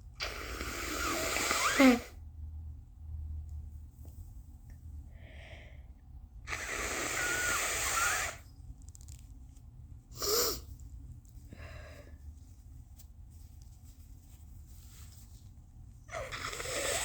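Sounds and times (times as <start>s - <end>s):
person blowing nose: 0.2s - 2.2s, 6.5s - 8.4s, 10.2s - 10.7s, 16.1s - 17.0s.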